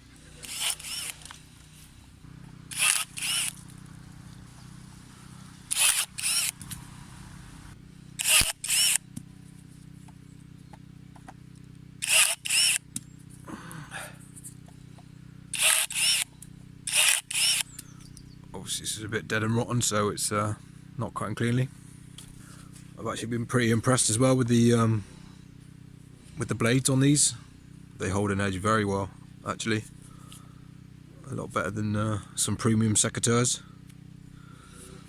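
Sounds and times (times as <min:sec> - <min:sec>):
secateurs motor whirring: 0:00.0 - 0:13.4, 0:14.3 - 0:18.4, 0:33.6 - 0:35.0.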